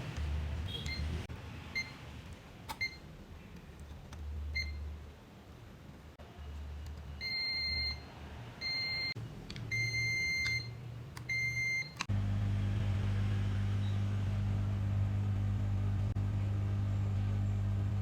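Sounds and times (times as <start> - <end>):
multimeter continuity beeps: 7.2 - 12.0.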